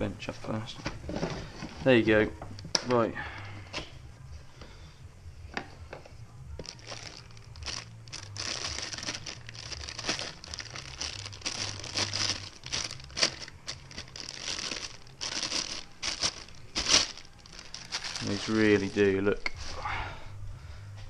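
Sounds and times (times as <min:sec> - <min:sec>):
plastic packaging crinkling: 0:06.6 - 0:19.2.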